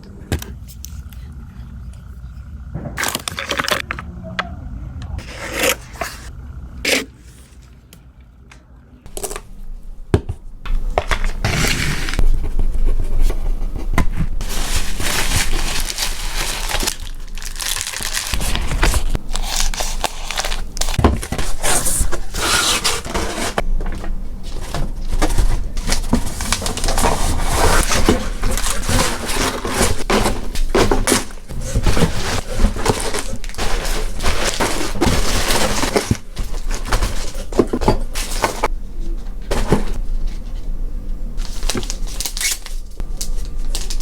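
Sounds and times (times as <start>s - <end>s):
packing material crinkling: 9.1s - 38.7s, 41.4s - 44.0s.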